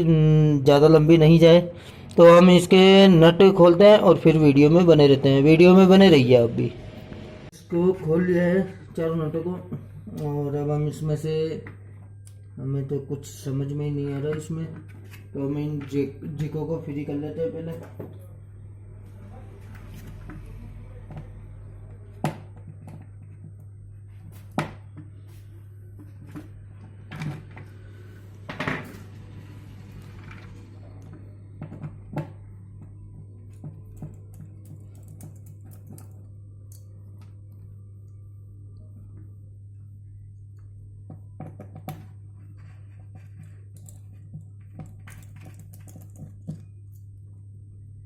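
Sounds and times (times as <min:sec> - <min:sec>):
steady low hum: 0:00.0 - 0:48.0.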